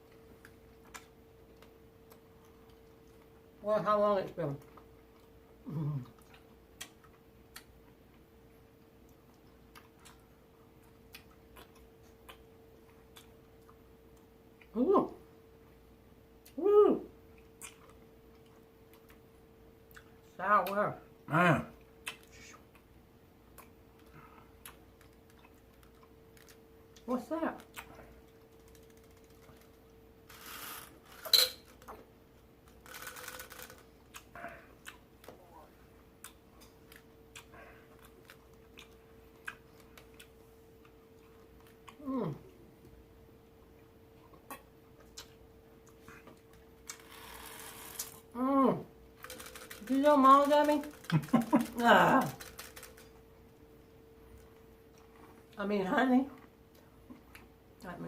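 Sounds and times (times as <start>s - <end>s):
faint steady hum: 0.0s - 58.0s
mouth clicks chewing candy: 17.4s - 19.3s, 36.2s - 42.0s, 49.2s - 53.2s
sharp clink: 31.2s - 31.7s.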